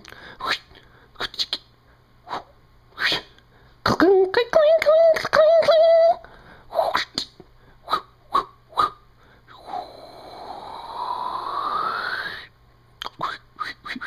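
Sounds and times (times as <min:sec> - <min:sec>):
breathy whistling rising in pitch: 0:07.9 - 0:12.5
mouth clicks and pops: 0:13.0 - 0:14.0.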